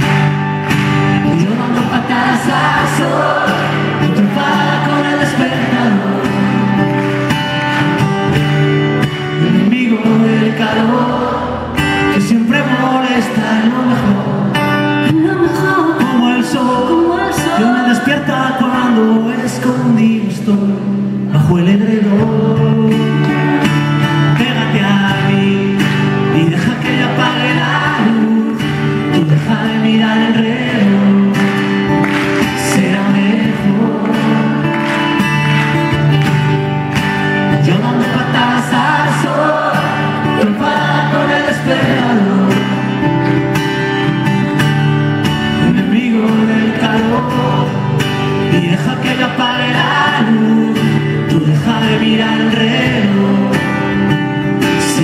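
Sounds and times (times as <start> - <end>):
live band playing: 0.0 - 12.2, 22.3 - 51.6
person singing: 12.1 - 23.6.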